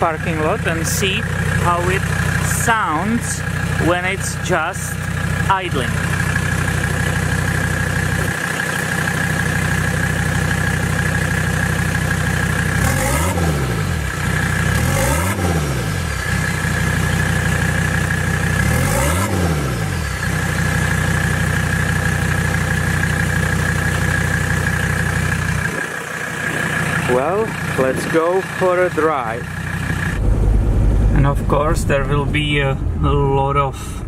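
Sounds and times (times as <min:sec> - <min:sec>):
diesel engine idling and revving: 0:00.0 - 0:34.0
high whine: 0:29.9 - 0:34.0.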